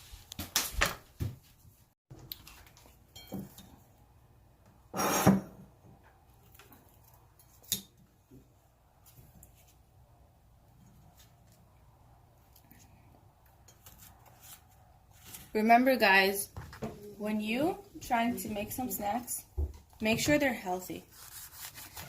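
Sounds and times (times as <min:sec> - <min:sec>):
dishes and utensils clattering: 0:03.1 - 0:03.8.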